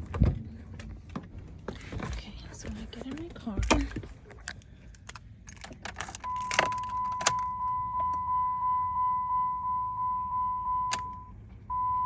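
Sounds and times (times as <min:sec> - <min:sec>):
car warning chime: 0:06.2 - 0:12.0.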